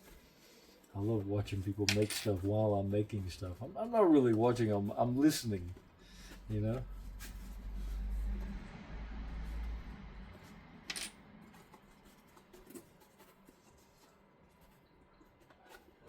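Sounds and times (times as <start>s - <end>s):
fabric handling rumble: 1.0s - 10.8s.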